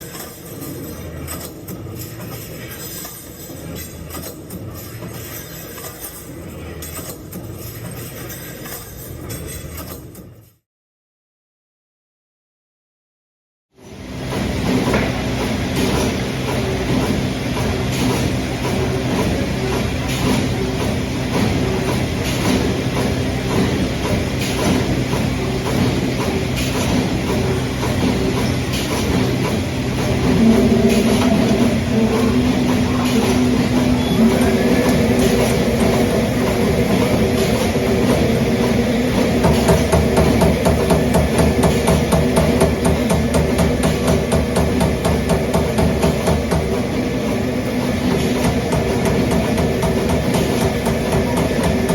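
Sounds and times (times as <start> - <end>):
punch press machine hum: 13.8 - 51.9.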